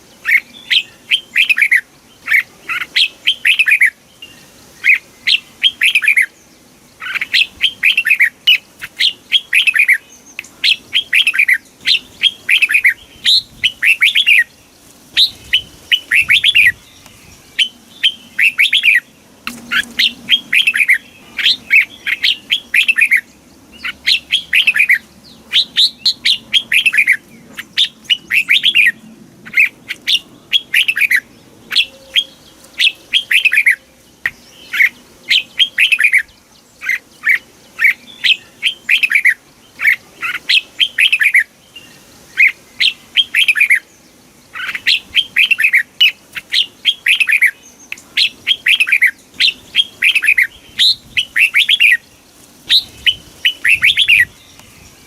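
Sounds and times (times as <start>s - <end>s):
bird singing whistled phrases: 17.6s - 19.1s, 29.6s - 33.8s, 48.2s - 52.0s.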